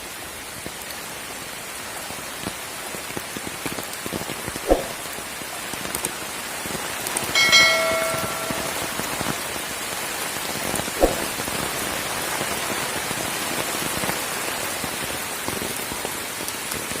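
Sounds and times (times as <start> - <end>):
heavy rain falling: 0.0 - 17.0.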